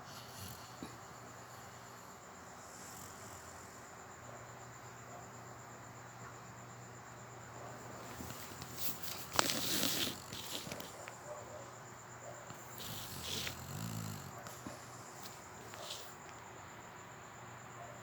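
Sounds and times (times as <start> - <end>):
pet snoring softly: 0.0 - 4.1, 8.1 - 11.6, 12.3 - 16.3
rustling: 7.9 - 11.4, 12.5 - 16.4.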